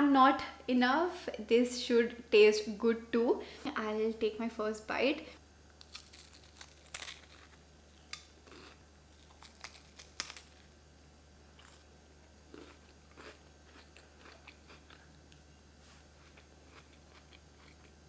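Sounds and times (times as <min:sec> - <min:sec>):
biscuit crunching: 0:05.8 - 0:10.7, 0:11.6 - 0:15.5.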